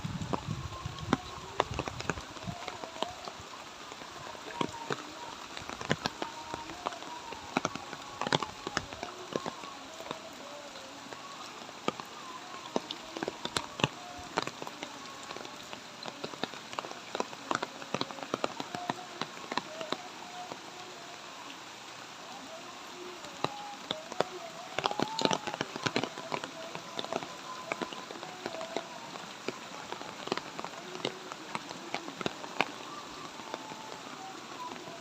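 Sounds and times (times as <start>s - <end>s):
light rain patter: 0.0s - 35.0s.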